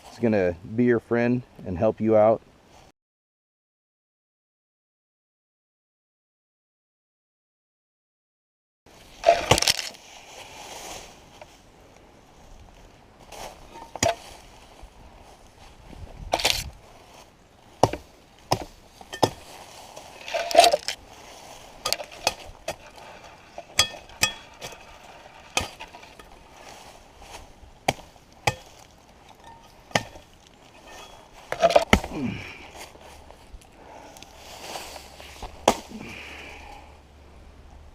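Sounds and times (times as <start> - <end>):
axe chopping wood: 9.2 - 9.9, 17.8 - 19.5, 21.8 - 23.0, 25.6 - 26.2, 27.9 - 28.9, 29.9 - 30.3, 31.5 - 32.3, 35.5 - 36.0.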